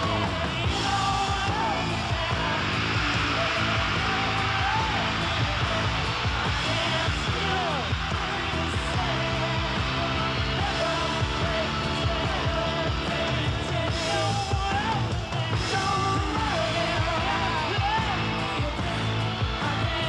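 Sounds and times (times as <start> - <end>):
rock music with singing: 0.0 - 20.0.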